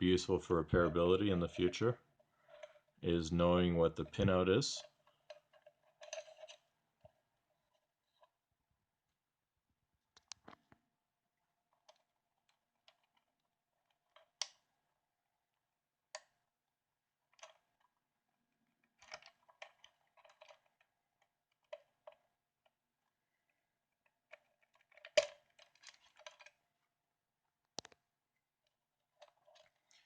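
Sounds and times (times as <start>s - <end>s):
faint small clicks: 10.1s - 10.8s, 27.6s - 28.0s.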